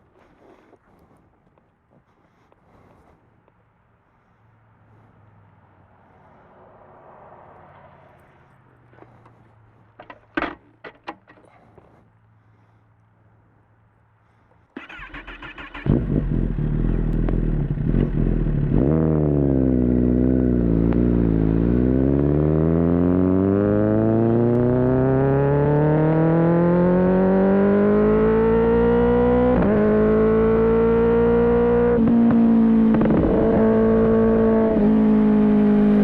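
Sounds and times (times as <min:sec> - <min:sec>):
motorcycle engine starting and revving: 0:14.8 - 0:36.0.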